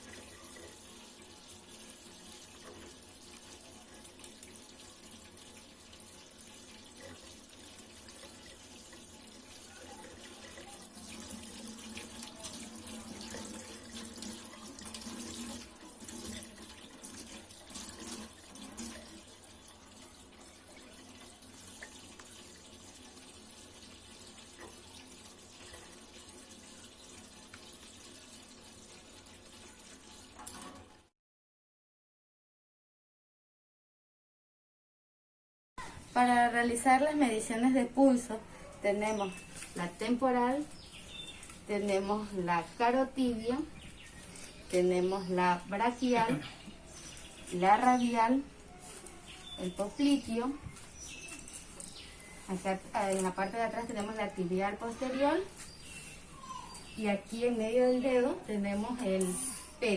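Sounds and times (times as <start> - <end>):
tap water running into sink: 0.0 - 31.1, 49.4 - 55.1.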